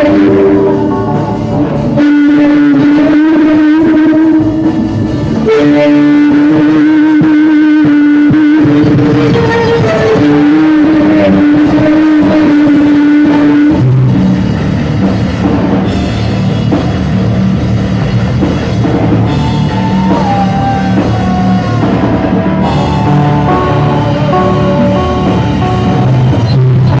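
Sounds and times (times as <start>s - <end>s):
held electric guitar note: 0.0s - 14.1s, 19.2s - 27.0s
live rock band playing: 0.0s - 27.0s.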